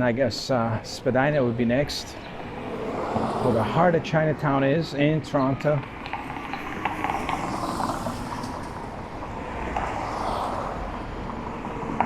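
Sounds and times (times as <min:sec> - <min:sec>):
city street traffic: 0:00.0 - 0:12.0
vehicle passing: 0:00.5 - 0:12.0.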